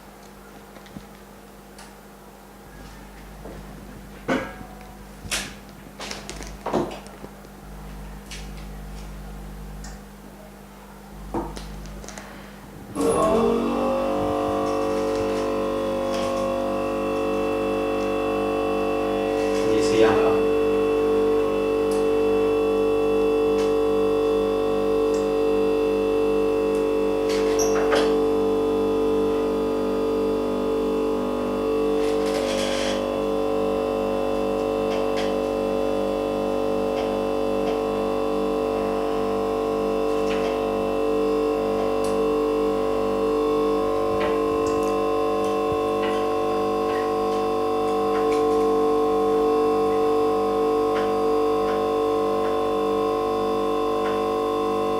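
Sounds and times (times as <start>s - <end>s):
machine hum with low pulsing: 0.0s - 54.9s.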